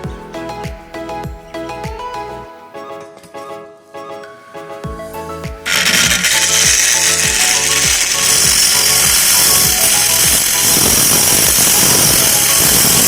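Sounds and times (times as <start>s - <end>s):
background music with beat: 0.0s - 13.0s
angle grinder running: 5.7s - 13.0s.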